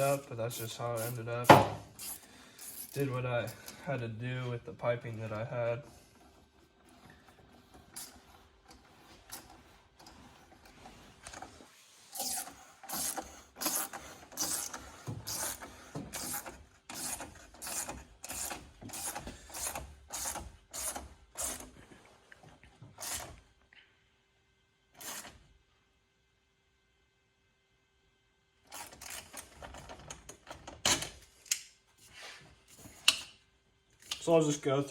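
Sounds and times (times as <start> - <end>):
hand ratchet clicking: 2.0 - 3.6, 12.2 - 21.7.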